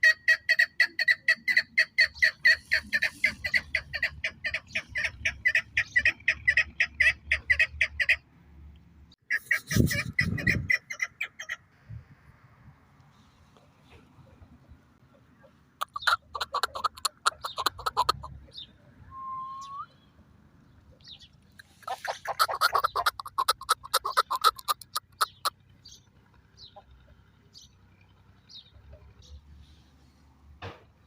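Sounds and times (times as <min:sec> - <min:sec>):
rising whistle: 0:19.1 - 0:20.0.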